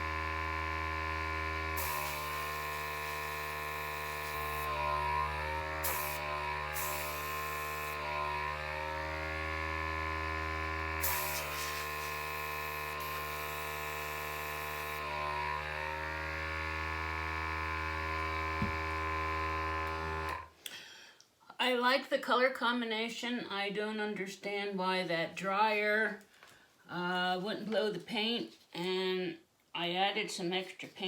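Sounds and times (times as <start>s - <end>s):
air compressor motor humming: 0.0s - 20.5s
air gun hissing: 1.4s - 8.7s, 10.8s - 15.2s.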